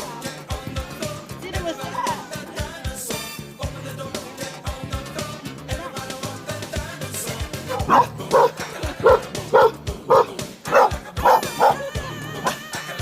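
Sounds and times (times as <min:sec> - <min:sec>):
puppy barking: 0:07.7 - 0:12.6.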